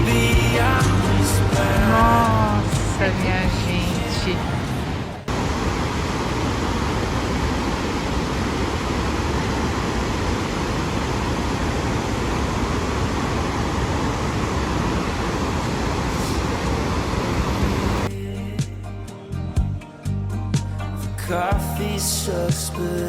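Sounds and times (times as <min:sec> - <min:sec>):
waterfall roaring: 0:01.9 - 0:18.1.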